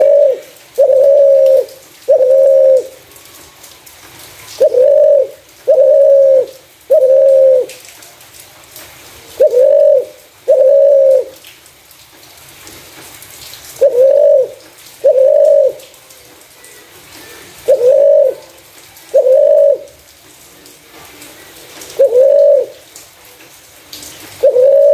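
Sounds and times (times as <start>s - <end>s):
dove cooing: 0.0s - 3.0s, 4.5s - 7.8s, 9.3s - 11.4s, 13.8s - 16.0s, 16.6s - 20.0s, 21.7s - 22.8s, 24.3s - 24.9s.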